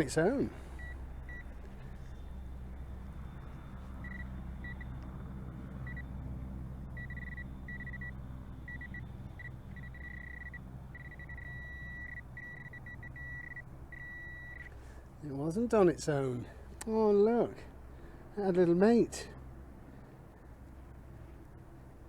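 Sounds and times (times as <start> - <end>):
low steady rumble: 0.0 - 22.0
metal detector beeping: 0.8 - 1.5, 4.0 - 4.9, 7.0 - 14.7.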